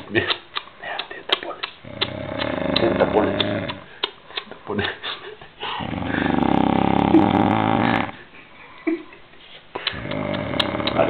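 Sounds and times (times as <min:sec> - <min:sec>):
man snoring loudly: 0:01.9 - 0:03.8, 0:05.8 - 0:08.2, 0:10.0 - 0:11.0.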